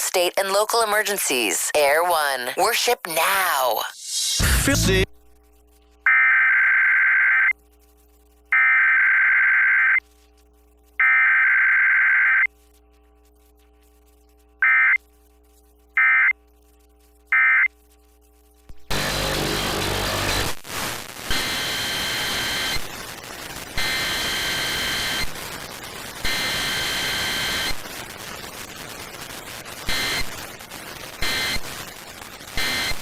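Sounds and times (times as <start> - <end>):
buzzy data bursts: 4.1 - 33.0
faint steady hum: 4.9 - 33.0
hissing static: 12.3 - 33.0.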